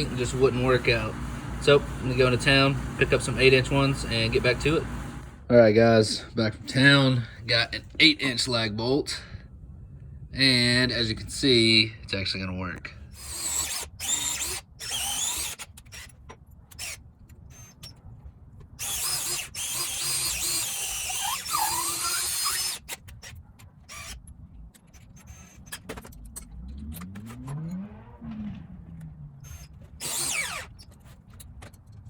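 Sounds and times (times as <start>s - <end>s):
drill motor whine: 0.0s - 5.4s, 18.8s - 22.8s, 29.4s - 30.7s
screw squealing into wood: 13.2s - 18.0s, 18.8s - 26.0s, 29.4s - 31.6s.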